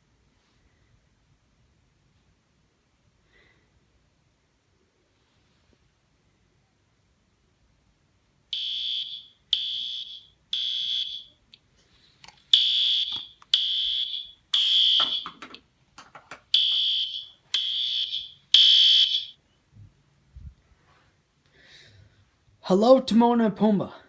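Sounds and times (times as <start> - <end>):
fire alarm high-pitched blasts: 8.5 - 11.4, 12.5 - 15.4, 16.6 - 19.4.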